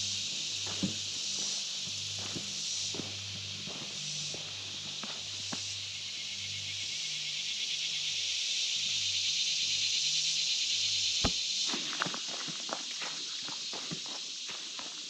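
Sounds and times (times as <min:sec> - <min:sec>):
footsteps crunching on trail: 0:00.0 - 0:05.8, 0:11.2 - 0:15.0
insects buzzing: 0:00.0 - 0:15.0.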